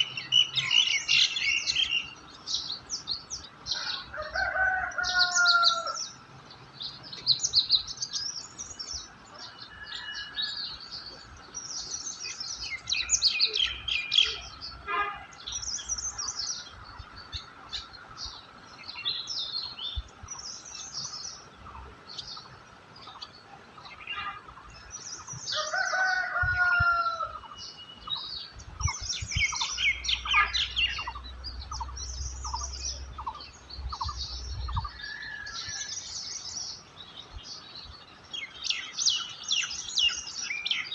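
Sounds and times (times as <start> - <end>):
songbirds chirping: 0.0 - 40.9.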